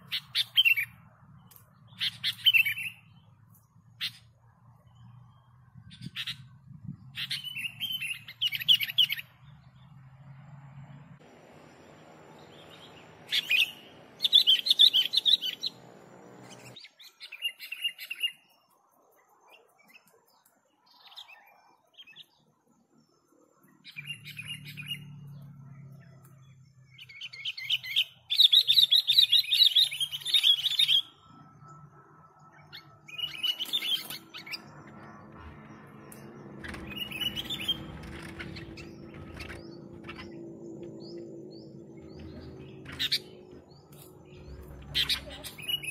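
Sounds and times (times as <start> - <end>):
bulbuls singing: 11.0 - 18.4, 32.5 - 45.9.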